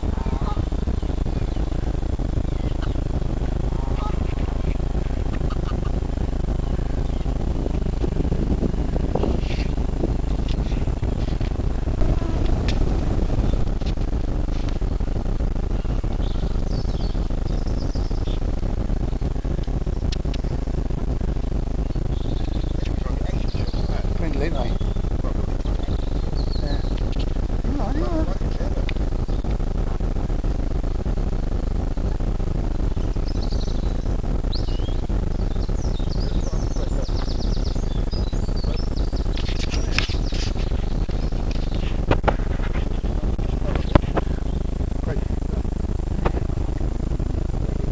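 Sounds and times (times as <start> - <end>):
small birds chirping: 0.0 - 47.8
low rumbling noise: 0.0 - 47.9
sharp clicks: 0.8 - 27.5
faint bird chirps: 15.7 - 20.7, 21.8 - 25.0, 25.6 - 27.4, 33.0 - 42.0.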